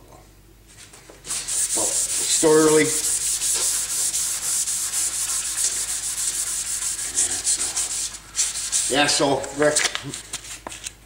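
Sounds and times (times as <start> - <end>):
hand sanding metal panel: 1.3 - 9.4.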